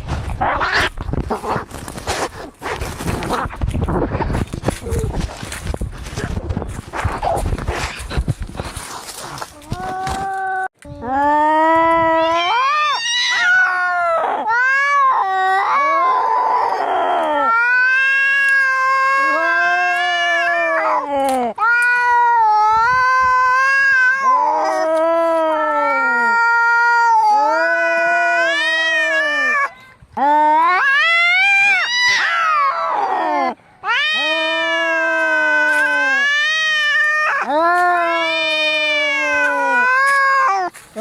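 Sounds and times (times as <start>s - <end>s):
cats yowling: 9.6s - 41.0s.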